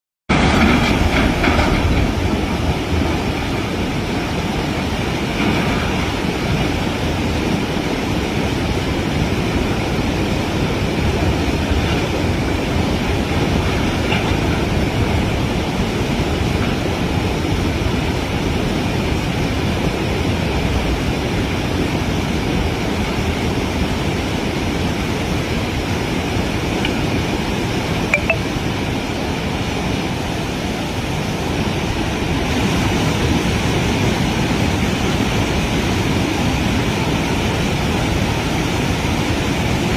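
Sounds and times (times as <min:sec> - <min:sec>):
floodwater rushing: 0:00.3 - 0:39.9.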